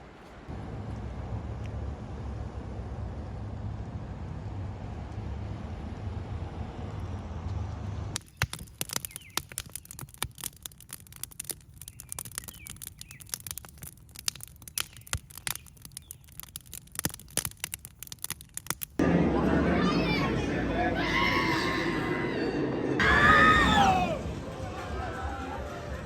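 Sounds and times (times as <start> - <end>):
steady rumble: 0.0 - 8.2, 18.0 - 26.0
dense crackling clicks: 8.2 - 19.0.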